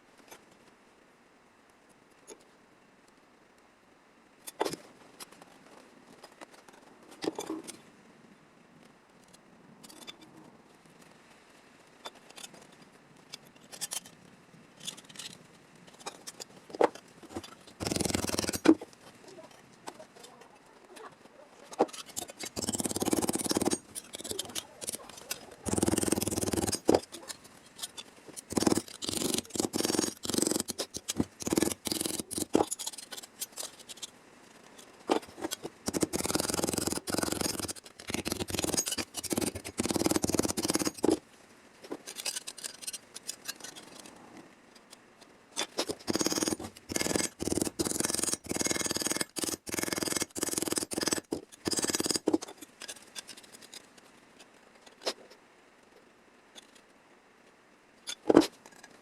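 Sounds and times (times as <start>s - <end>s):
hand tool striking sheet steel: 22.1s - 27.3s, 28.4s - 33.0s.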